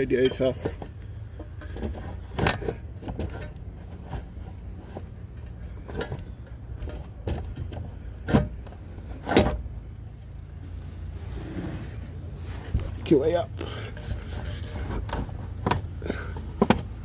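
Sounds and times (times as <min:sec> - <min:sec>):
metal part knocking and scraping: 0:00.0 - 0:10.3
steady low hum: 0:00.0 - 0:17.0.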